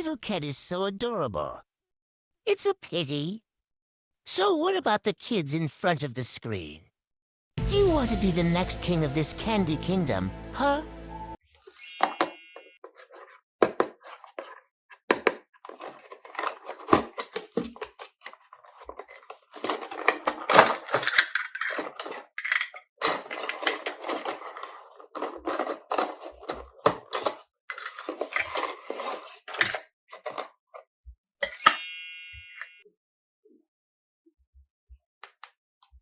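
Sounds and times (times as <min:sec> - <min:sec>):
toy pieces clicking and clinking: 0:15.7 - 0:30.5.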